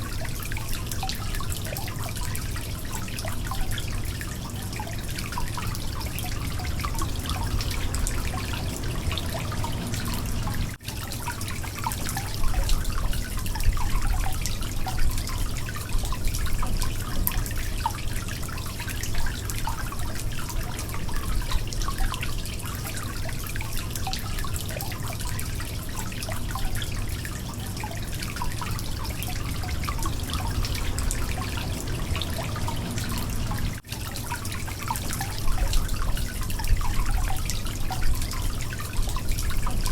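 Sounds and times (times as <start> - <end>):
water dripping and trickling: 0.0 - 39.9
steady low rumble: 5.8 - 10.8, 28.8 - 33.8.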